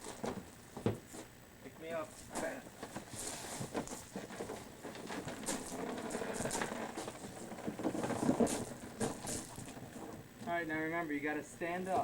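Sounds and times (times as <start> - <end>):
cardboard box rustling and scraping: 2.9 - 10.2.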